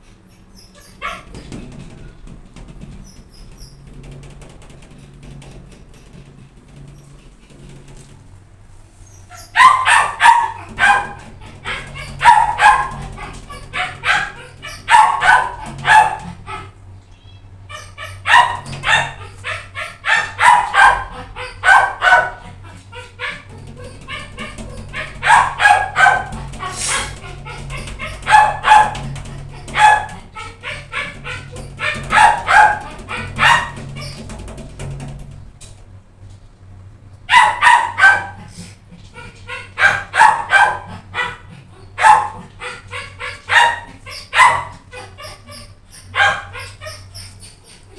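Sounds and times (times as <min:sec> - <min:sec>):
dog barking in sharp yaps: 0:09.3 - 0:16.6, 0:17.7 - 0:22.5, 0:23.2 - 0:34.2, 0:37.3 - 0:38.5, 0:39.5 - 0:41.4, 0:42.0 - 0:47.0.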